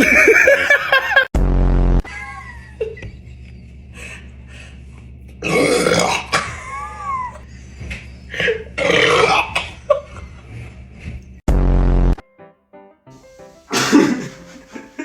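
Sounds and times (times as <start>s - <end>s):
person burping loudly: 5.4s - 6.6s, 8.8s - 9.8s.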